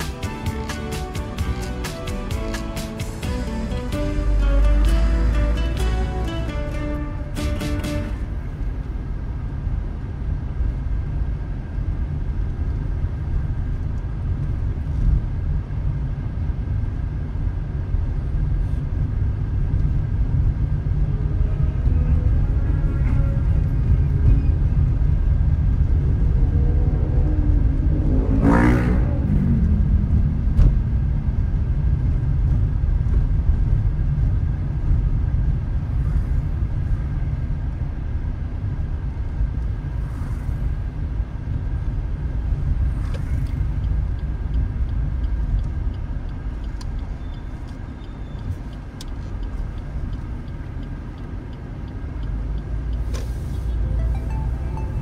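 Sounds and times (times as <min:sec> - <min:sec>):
car road and wind rumble: 0:00.0 - 0:55.0
pitched sound sweeping past: 0:53.8 - 0:55.0.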